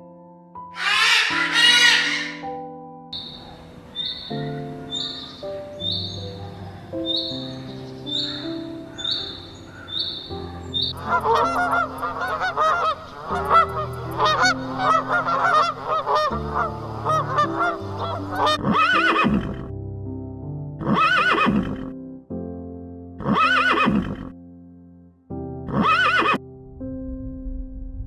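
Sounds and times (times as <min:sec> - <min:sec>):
background music: 0:00.0 - 0:28.0
geese honking: 0:00.8 - 0:02.5, 0:03.2 - 0:19.3
horse whinnying: 0:00.8 - 0:02.5, 0:18.5 - 0:19.6, 0:20.8 - 0:21.9, 0:23.2 - 0:24.3, 0:25.7 - 0:26.4.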